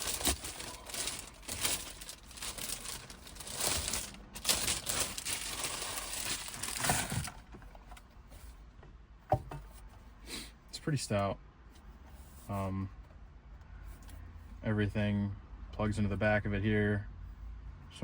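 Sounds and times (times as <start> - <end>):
packaging crinkling: 0.0 - 7.4.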